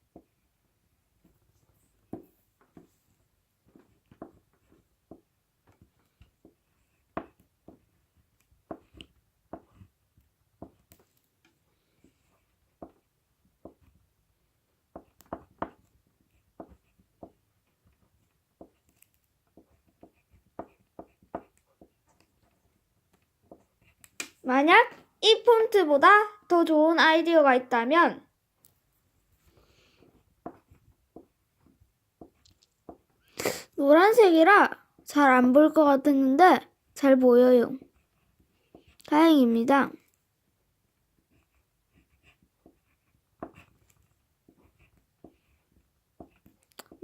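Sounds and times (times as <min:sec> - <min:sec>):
crayon drawing on paper: 0:01.6 - 0:24.1, 0:37.0 - 0:39.4, 0:41.1 - 0:47.0.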